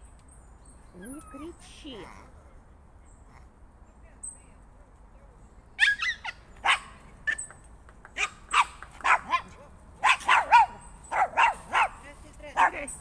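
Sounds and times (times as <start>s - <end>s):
dog barking: 5.8s - 7.0s, 8.2s - 12.0s, 12.6s - 12.9s.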